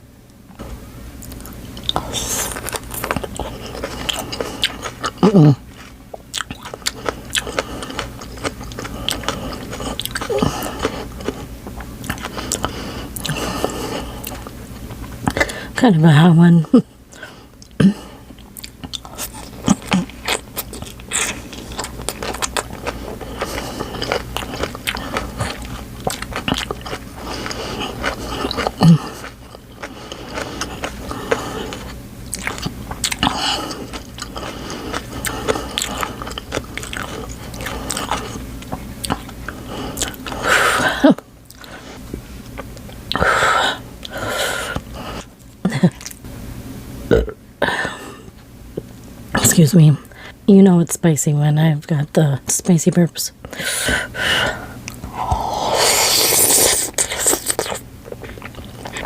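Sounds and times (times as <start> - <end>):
wet chewing and biting: 1.2 - 14.6, 17.6 - 40.4, 54.8 - 59.0.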